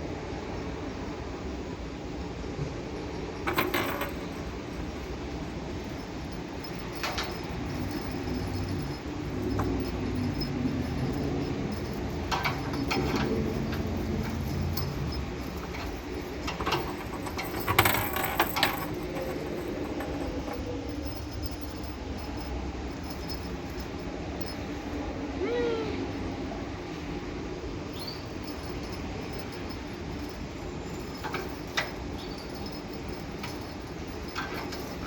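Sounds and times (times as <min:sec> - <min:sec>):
low steady rumble: 0:00.0 - 0:35.0
rustling and handling clicks: 0:05.7 - 0:24.6
kitten mewing: 0:25.4 - 0:26.2.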